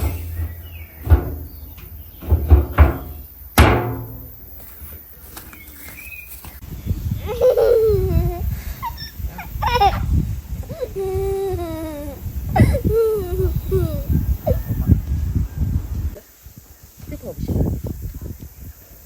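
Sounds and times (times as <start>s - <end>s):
sharp ringing knocks: 0.0s - 4.6s.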